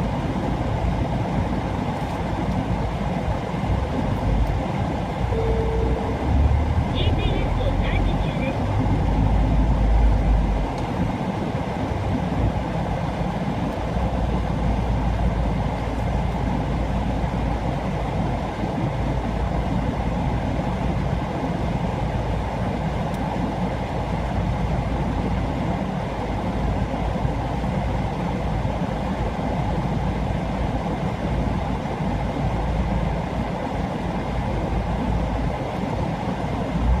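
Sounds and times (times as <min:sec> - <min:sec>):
car engine rumble: 0:00.0 - 0:37.0.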